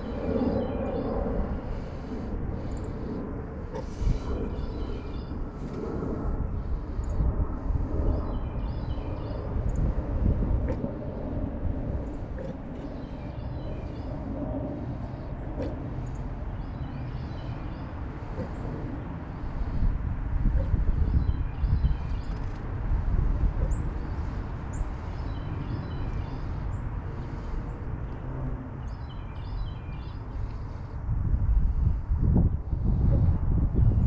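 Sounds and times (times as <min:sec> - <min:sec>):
steady low rumble: 0:00.0 - 0:34.0
small birds chirping: 0:12.0 - 0:19.8, 0:23.5 - 0:28.2, 0:28.8 - 0:30.9.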